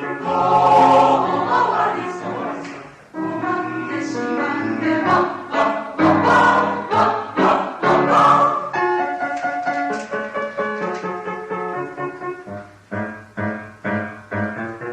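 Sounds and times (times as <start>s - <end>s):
mixed choir singing: 0.0s - 9.0s
piano accompaniment: 0.0s - 14.9s.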